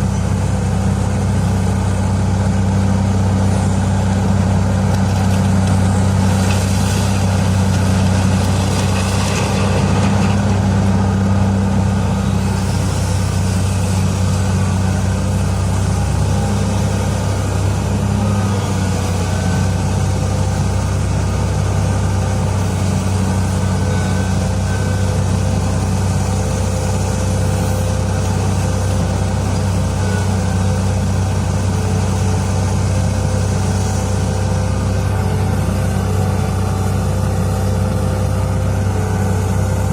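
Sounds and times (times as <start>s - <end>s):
diesel engine running: 0.0s - 39.9s
rushing gritty noise: 3.4s - 21.2s.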